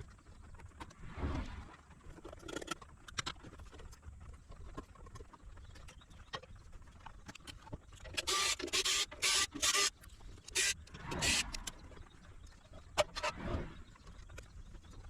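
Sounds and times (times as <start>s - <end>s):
small electric motor tool running: 8.2s - 11.6s.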